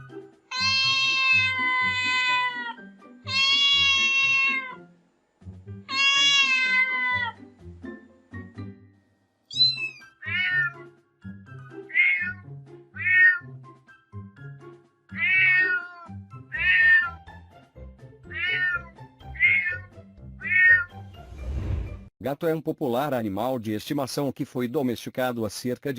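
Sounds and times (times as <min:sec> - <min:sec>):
background music: 0:00.0 - 0:25.1
cat meowing: 0:00.5 - 0:04.8, 0:05.9 - 0:07.4, 0:09.5 - 0:10.8, 0:11.9 - 0:13.5, 0:15.1 - 0:17.2, 0:18.3 - 0:21.0.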